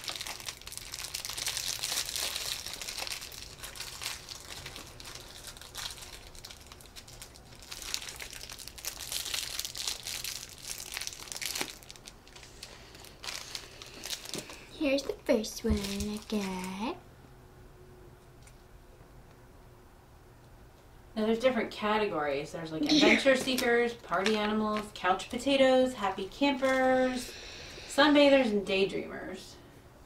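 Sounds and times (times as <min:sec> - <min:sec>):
plastic wrappers crinkling: 0:00.0 - 0:17.0, 0:22.9 - 0:27.2.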